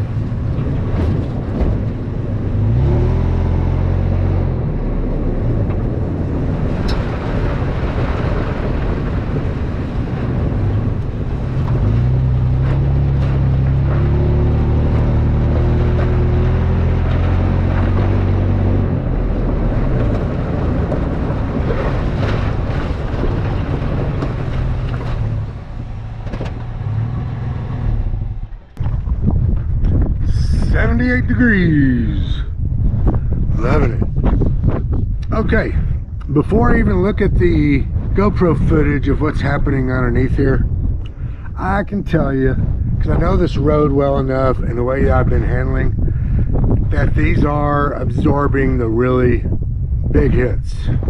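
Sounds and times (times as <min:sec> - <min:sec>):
knocks and rattles over bumps: 0:00.0 - 0:31.9
truck engine running: 0:00.0 - 0:50.6.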